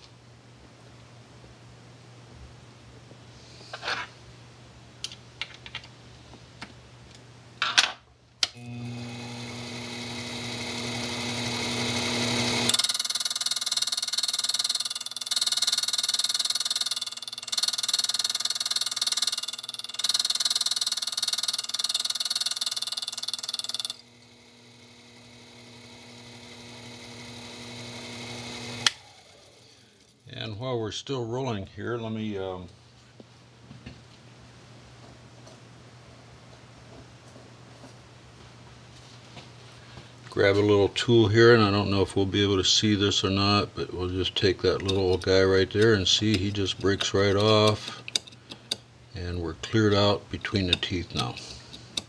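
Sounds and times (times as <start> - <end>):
electric motor humming: 8.5 - 29.9
machine cutter chattering through metal: 9.2 - 24.0.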